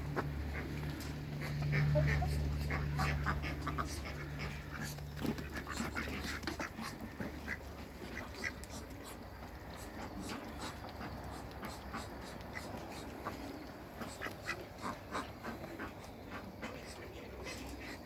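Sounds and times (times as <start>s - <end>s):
ducks calling softly: 0.0s - 18.0s.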